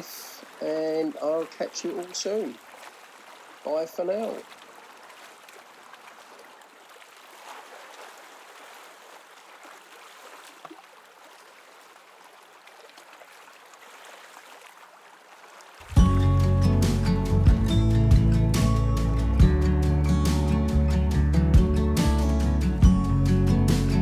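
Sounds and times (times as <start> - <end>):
small waves lapping: 0.0 - 24.0
loud music: 16.0 - 24.0.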